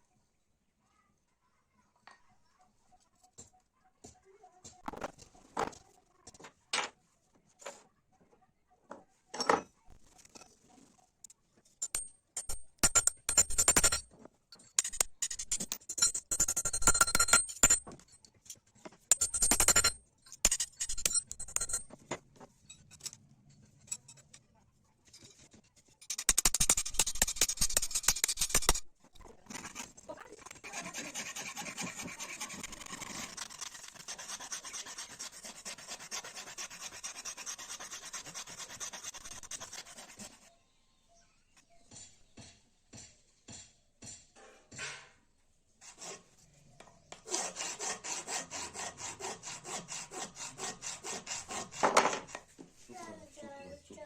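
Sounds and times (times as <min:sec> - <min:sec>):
filing or sanding metal: 0:30.4 - 0:40.5, 0:45.8 - 0:46.3, 0:47.3 - 0:52.4.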